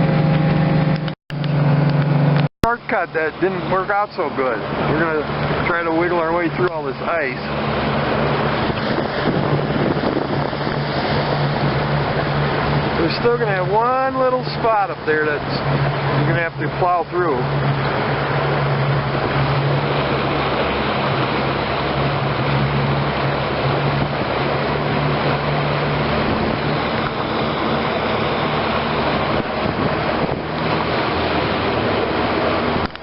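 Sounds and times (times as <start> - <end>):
outboard motor humming: 0.0 - 33.0
water rushing past hull: 0.0 - 33.0
wind noise on microphone: 4.6 - 13.6, 17.5 - 33.0.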